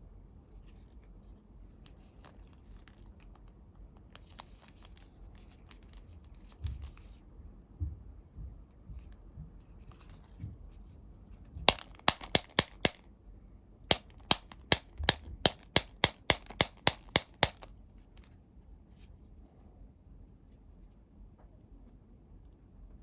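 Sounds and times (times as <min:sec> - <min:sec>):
paper toy snapping: 0:11.6 - 0:13.0, 0:13.9 - 0:18.3.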